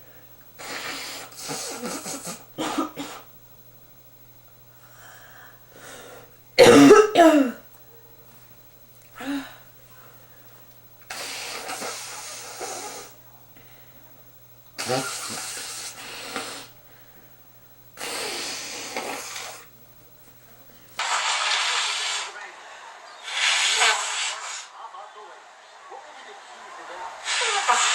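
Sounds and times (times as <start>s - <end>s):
man blowing nose: 0.6s - 3.3s, 11.1s - 13.2s, 14.8s - 16.8s, 18.0s - 19.7s, 21.0s - 22.3s, 23.2s - 24.7s.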